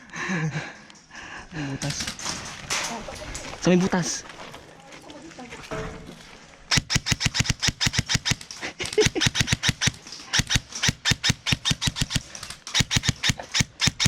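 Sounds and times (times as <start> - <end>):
airsoft rifle firing bursts: 6.7 - 14.0.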